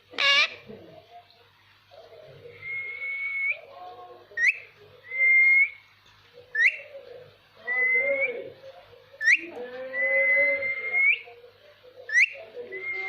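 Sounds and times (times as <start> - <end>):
parrot whistling: 9.2 - 11.3, 12.1 - 13.0.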